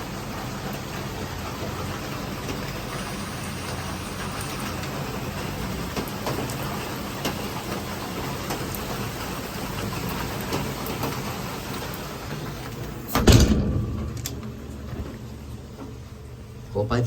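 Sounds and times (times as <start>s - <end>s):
heavy rain: 0.0s - 17.0s
loud low thump: 13.2s - 14.2s.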